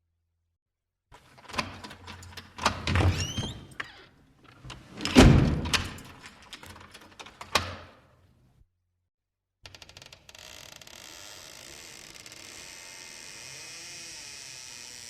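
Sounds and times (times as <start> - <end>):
door squeak: 2.9 - 4.2, 9.8 - 15.0
door latch and handle clicks: 4.5 - 8.0
door shutting with heavy thud: 4.9 - 6.2.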